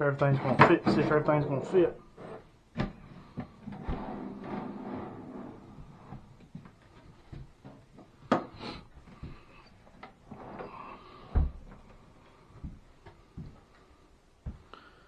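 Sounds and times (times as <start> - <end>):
wooden cabinet scraping: 0.2 - 6.3, 10.2 - 11.6.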